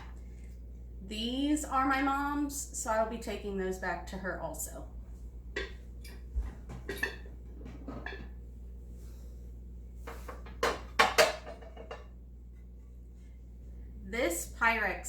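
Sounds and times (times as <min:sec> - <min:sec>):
dishes knocking and clinking: 0:05.5 - 0:08.4, 0:10.0 - 0:12.2
dishes clattering: 0:05.6 - 0:08.4, 0:10.1 - 0:12.1.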